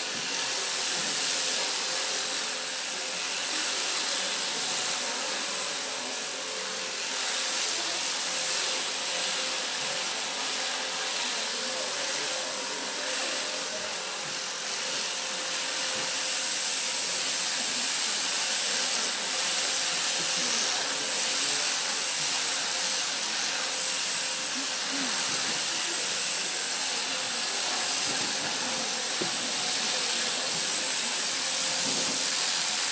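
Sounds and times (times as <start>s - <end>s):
electric sheep shears buzzing: 0.0s - 32.9s.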